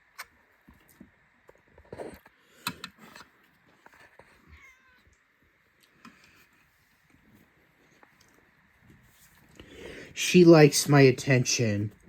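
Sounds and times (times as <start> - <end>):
cat meowing quietly: 4.3 - 5.2.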